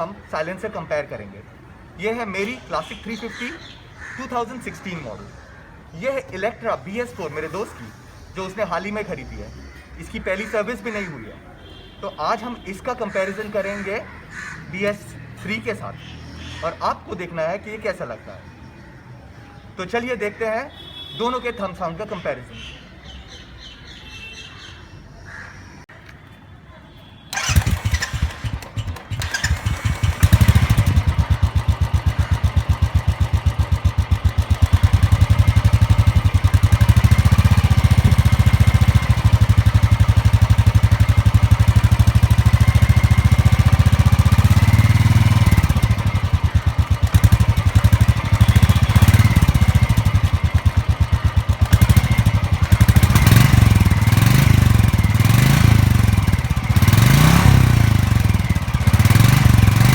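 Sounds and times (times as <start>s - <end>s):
motorcycle engine thumping: 27.3s - 59.9s.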